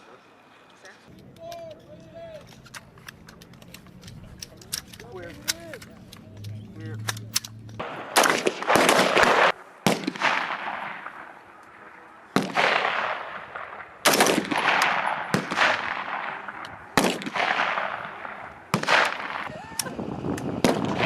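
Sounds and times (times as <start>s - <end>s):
rifle shots echoing: 7.0s - 19.5s, 20.5s - 21.0s.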